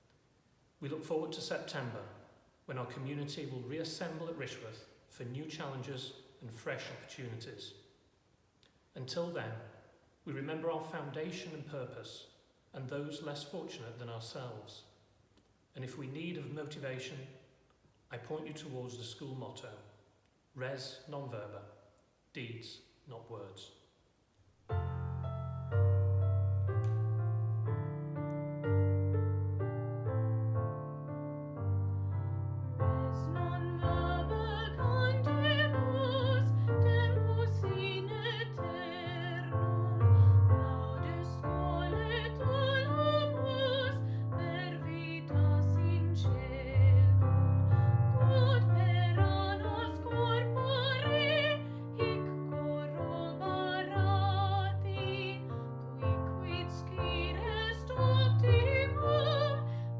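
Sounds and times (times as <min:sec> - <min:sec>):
piano chords: 0:24.7 - 0:59.9
soprano singing with vibrato: 0:33.0 - 0:55.5, 0:56.4 - 0:59.8.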